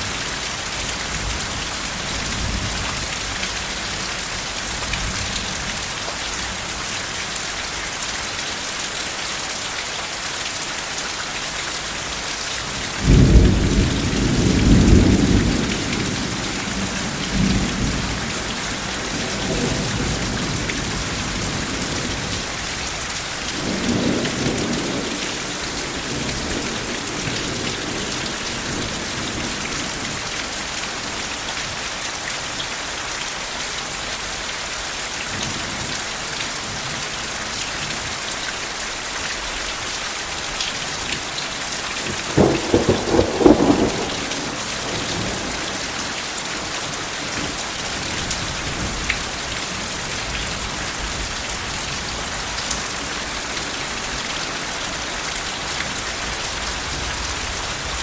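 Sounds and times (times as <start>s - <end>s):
heavy rain: 0.0s - 58.0s
thunder rumbling: 42.1s - 46.7s.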